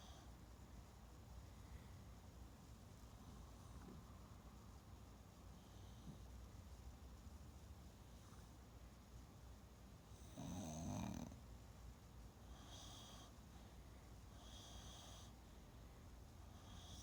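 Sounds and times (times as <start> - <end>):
soft high-pitched breaths: 0.0 - 0.6, 1.4 - 2.4, 12.3 - 17.0.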